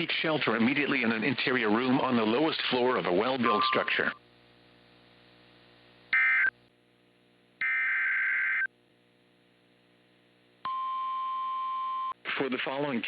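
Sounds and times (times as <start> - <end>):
warbling digital data bursts: 3.4 - 4.2
steady single-pitch attention tone: 3.5 - 4.2.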